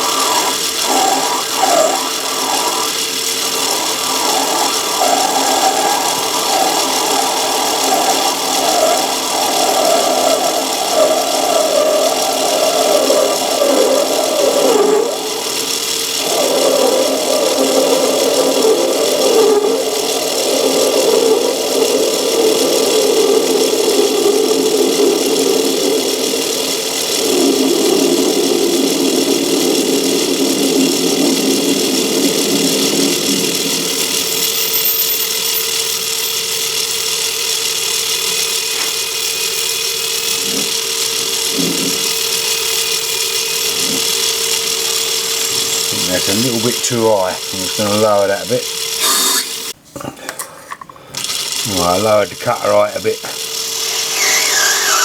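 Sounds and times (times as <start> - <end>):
lathe machine hum: 0.0 - 49.8, 51.2 - 55.0
parting tool cutting metal bar: 31.2 - 49.8, 53.7 - 55.0.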